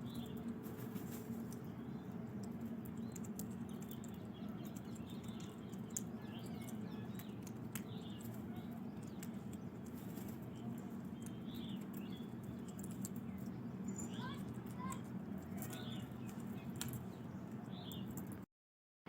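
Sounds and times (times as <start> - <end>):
small birds chirping: 0.0 - 18.4.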